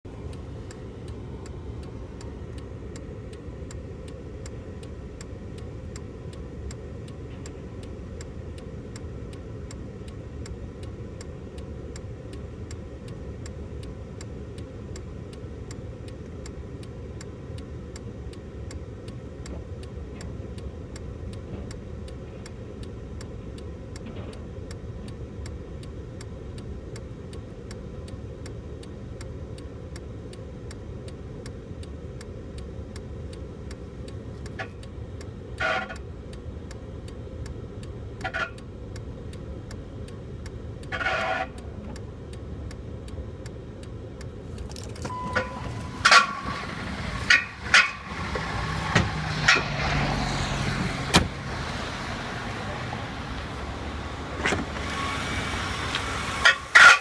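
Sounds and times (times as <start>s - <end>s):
engine running: 0.0s - 57.0s
sharp regular ticking: 0.1s - 45.1s.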